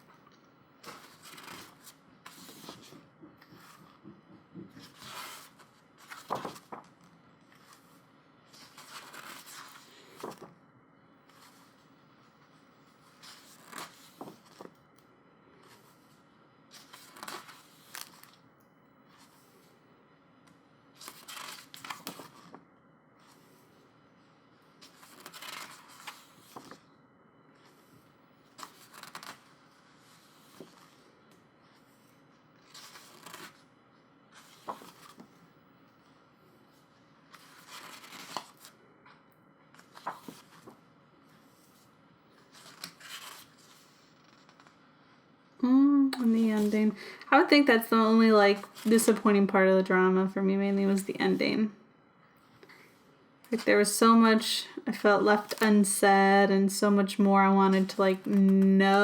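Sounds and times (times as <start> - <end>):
book pages being turned: 0.8 - 10.5, 11.3 - 14.8, 15.6 - 18.4, 21.0 - 22.6, 24.8 - 26.9, 28.5 - 33.7, 34.3 - 36.1, 36.8 - 44.8, 46.2 - 46.9, 55.2 - 55.8, 57.8 - 59.0.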